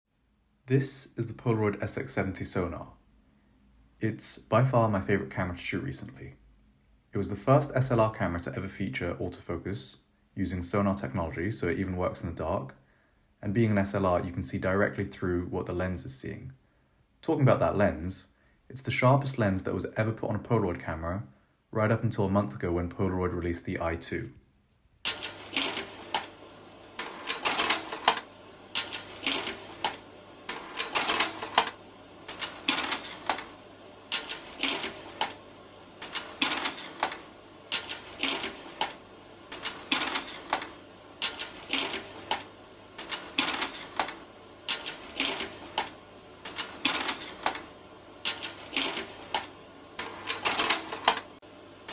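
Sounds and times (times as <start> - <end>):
rhythmic mechanical clicking: 25.0 - 51.9.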